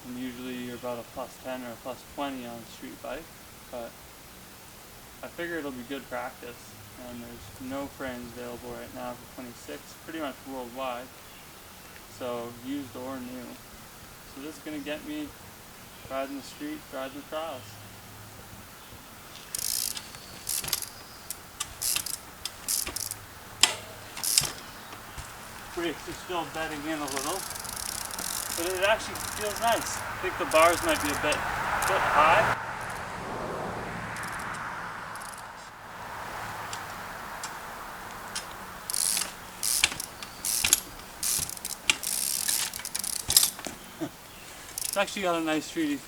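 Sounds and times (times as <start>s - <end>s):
bicycle freewheel ratcheting: 19.3s - 33.1s, 34.1s - 35.6s, 36.7s - 45.2s
sharp clicks: 19.4s - 32.1s, 32.8s - 33.1s, 34.1s - 35.6s, 36.7s - 43.9s, 44.7s - 45.1s.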